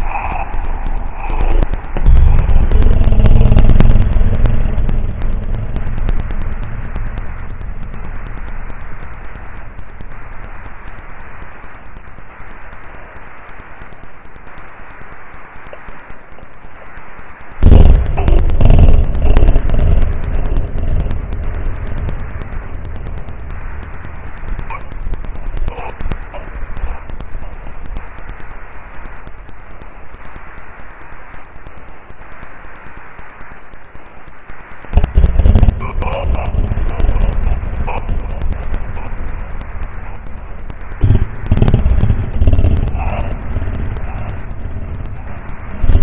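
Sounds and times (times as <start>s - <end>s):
loud sudden sound: 0.0s - 10.5s, 17.6s - 27.9s, 35.0s - 46.0s
faint clicks: 0.0s - 46.0s
microphone static hiss: 0.0s - 46.0s.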